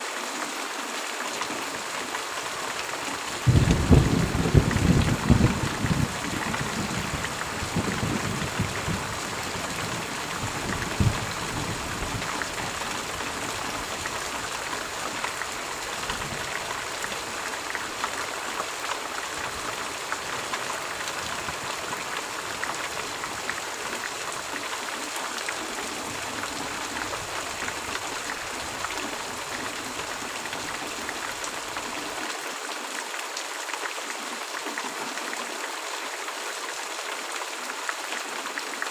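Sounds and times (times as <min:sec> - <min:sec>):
steady rain hiss: 0:00.0 - 0:38.9
thunder clap rumbling: 0:03.5 - 0:12.2.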